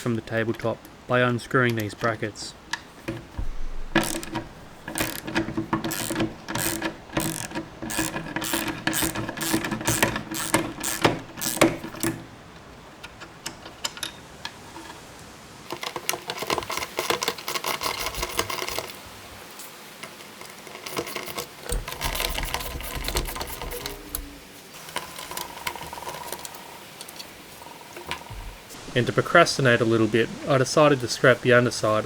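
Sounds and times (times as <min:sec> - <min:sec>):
hand ratchet clicking: 0:01.6 - 0:12.4, 0:15.7 - 0:19.0, 0:20.0 - 0:27.3.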